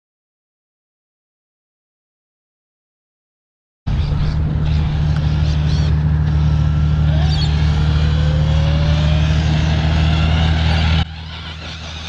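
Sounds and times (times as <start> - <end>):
electric motor whine: 3.9 - 12.0
low rumble: 3.9 - 12.0.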